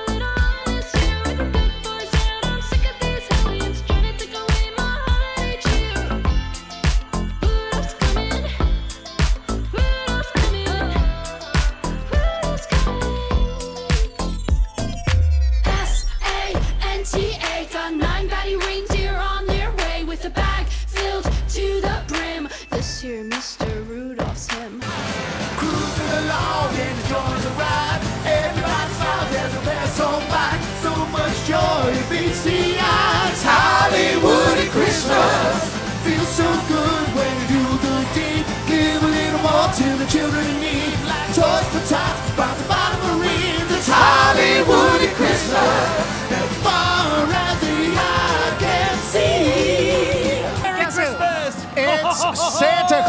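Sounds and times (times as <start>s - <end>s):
pop-rock song with singing: 0.0s - 14.8s, 15.7s - 53.0s.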